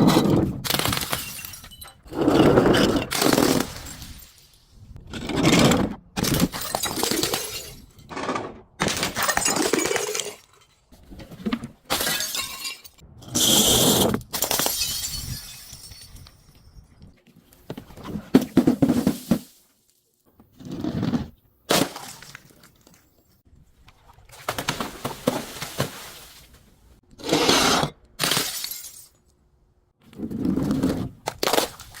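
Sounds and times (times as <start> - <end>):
glass breaking and crunching: 0.6 - 2.1, 6.2 - 8.1, 8.8 - 10.9, 11.9 - 13.0, 14.3 - 16.5, 28.2 - 29.2.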